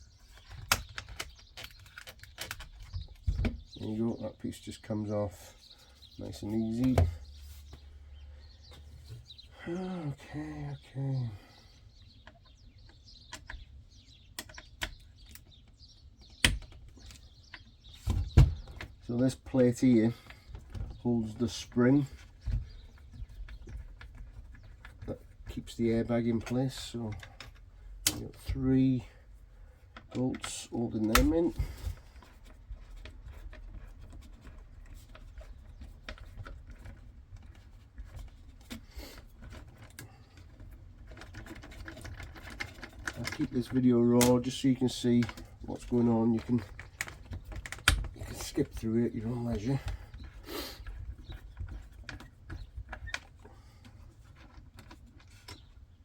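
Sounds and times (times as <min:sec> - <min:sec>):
small parts and tools clicking: 0:00.3 - 0:03.5, 0:30.0 - 0:48.8.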